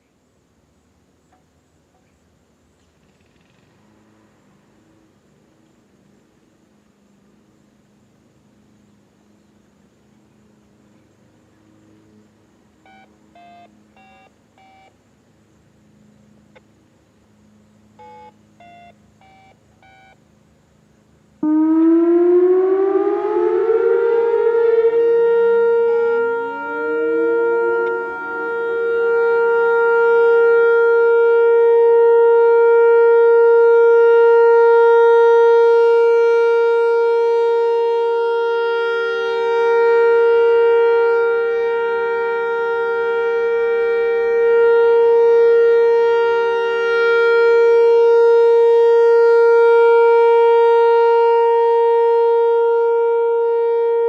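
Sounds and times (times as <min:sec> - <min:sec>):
warning siren two-tone wail: 0:18.0 - 0:20.2, 0:21.4 - 0:54.0.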